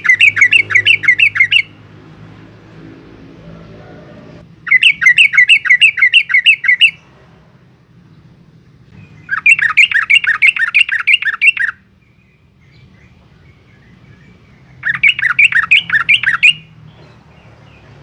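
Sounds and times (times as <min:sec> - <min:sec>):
bird singing bubbling notes: 0:00.0 - 0:01.7, 0:09.0 - 0:16.7.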